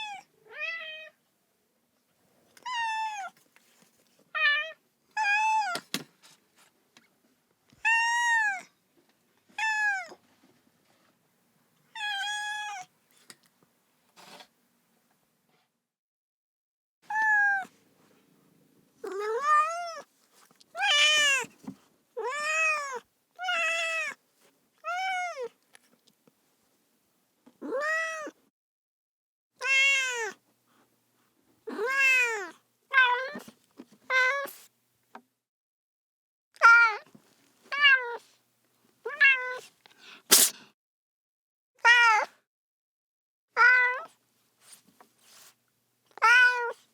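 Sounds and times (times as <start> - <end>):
cat meowing: 11.9 - 12.9, 17.1 - 17.7, 19.0 - 20.1, 24.8 - 25.5, 27.6 - 28.4, 29.6 - 30.4, 31.7 - 33.4, 37.7 - 38.3, 39.1 - 39.7, 41.8 - 42.3, 43.6 - 44.1, 46.2 - 46.8.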